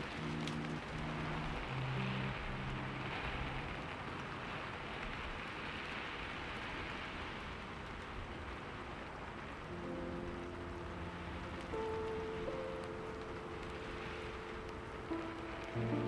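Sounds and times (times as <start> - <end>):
low piano notes: 0.0 - 4.4, 9.6 - 16.0
rain-like hiss: 0.0 - 16.0.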